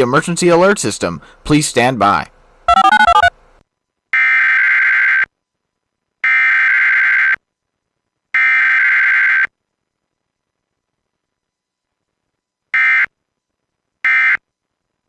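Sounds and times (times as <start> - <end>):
digital data tone bursts: 2.7 - 3.3.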